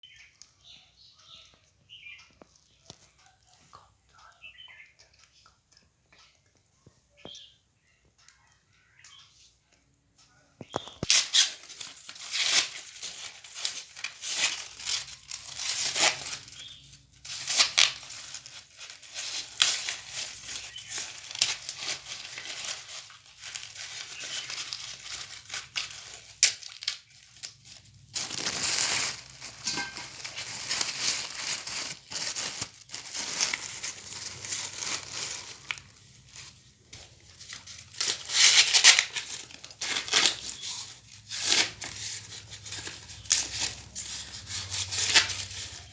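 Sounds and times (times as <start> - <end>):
corn husks rustling and tearing: 10.6 - 45.9.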